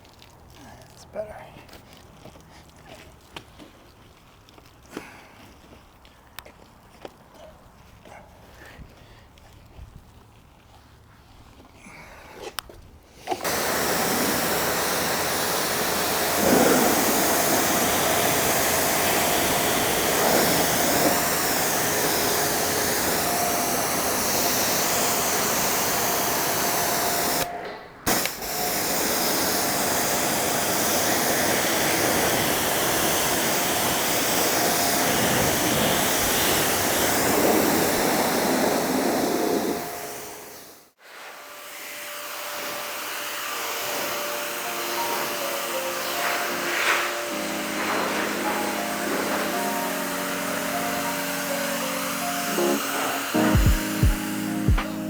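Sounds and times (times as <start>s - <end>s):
electric blower motor running: 13.3s - 55.0s.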